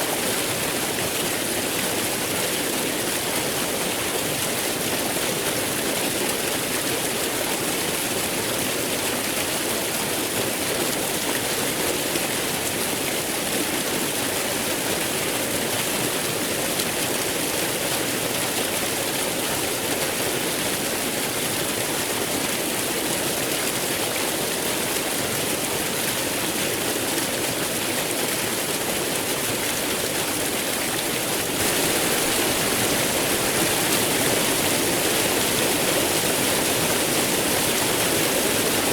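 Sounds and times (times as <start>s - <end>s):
waterfall rushing: 31.4s - 38.9s.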